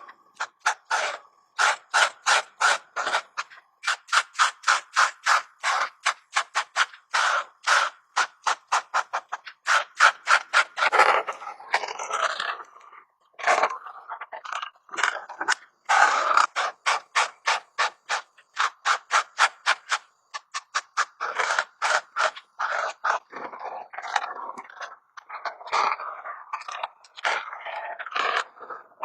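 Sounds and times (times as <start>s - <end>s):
coloring tool scraping paper: 0.0s - 12.6s, 14.5s - 24.2s.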